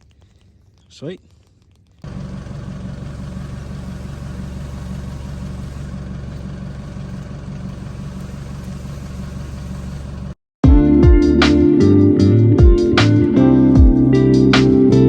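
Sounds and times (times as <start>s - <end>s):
vehicle engine humming: 1.9s - 10.4s.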